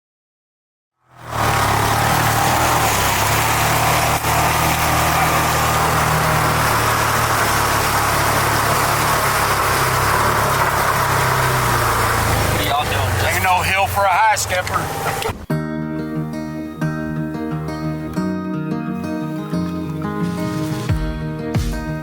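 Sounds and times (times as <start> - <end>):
vehicle engine running: 1.0 - 15.5
road noise: 1.0 - 21.5.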